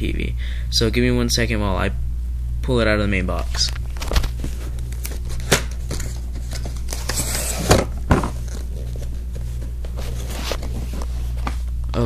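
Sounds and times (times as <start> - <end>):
low electrical hum: 0.0 - 12.0
cardboard packaging handled: 3.9 - 11.7.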